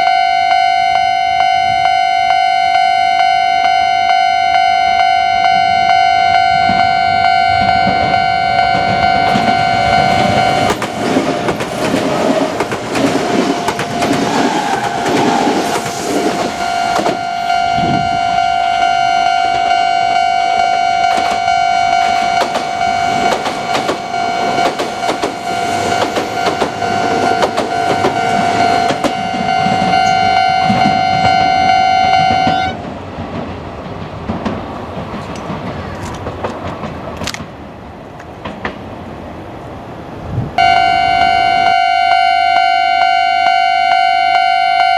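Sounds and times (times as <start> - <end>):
level-crossing warning bell: 0.0 - 32.8, 40.6 - 44.9
train wheels clattering: 8.8 - 17.2, 21.1 - 31.4, 32.2 - 37.6.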